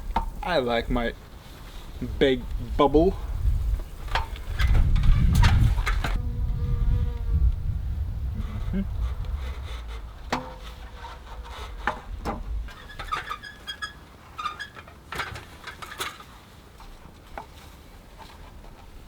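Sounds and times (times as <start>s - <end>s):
low rumble: 4.9s - 13.3s
hard objects knocking and clicking: 9.2s - 13.2s.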